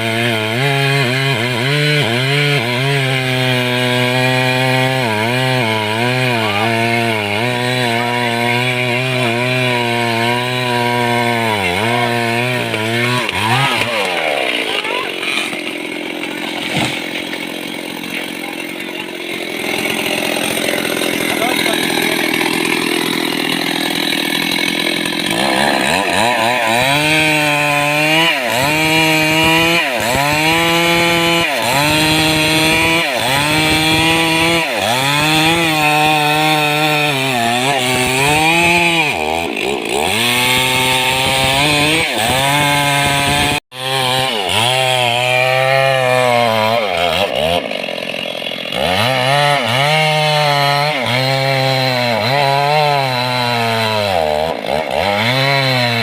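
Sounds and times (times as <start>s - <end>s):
chainsaw cutting wood: 0.0s - 56.0s.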